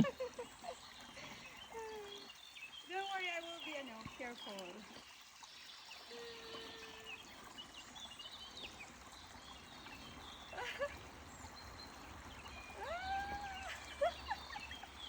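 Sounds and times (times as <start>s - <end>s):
small birds chirping: 0.0s - 15.0s
stream running water: 0.0s - 15.0s.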